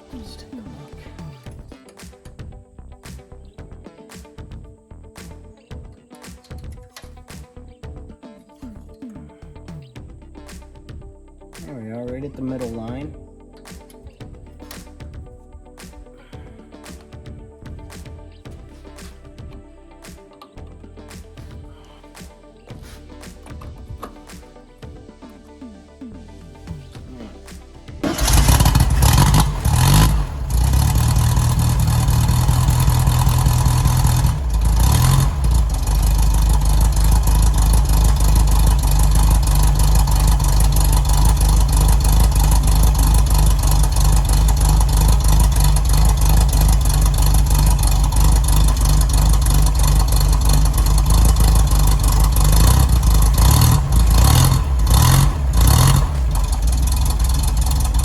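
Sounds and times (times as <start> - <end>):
air-cooled engine running: 28.0 - 58.0.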